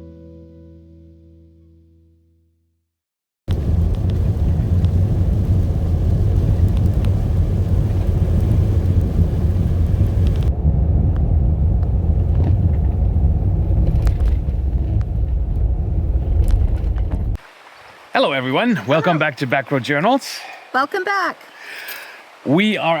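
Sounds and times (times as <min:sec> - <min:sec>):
loud low rumbling: 0:03.5 - 0:17.4.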